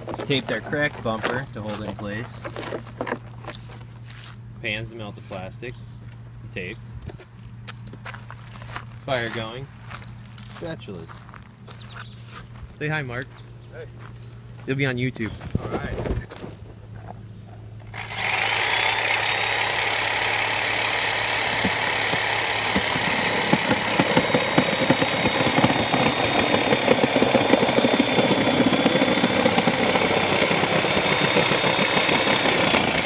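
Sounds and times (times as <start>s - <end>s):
reciprocating saw cutting plastic: 17.9s - 33.0s.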